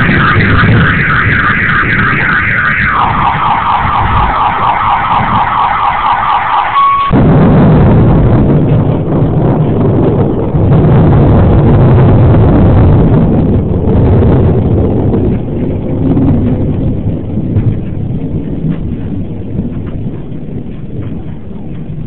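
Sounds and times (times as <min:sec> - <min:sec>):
car alarm steady beep: 0:00.0 - 0:07.2
car alarm warbling siren: 0:00.0 - 0:07.2
loud low rumbling noise: 0:00.0 - 0:22.0.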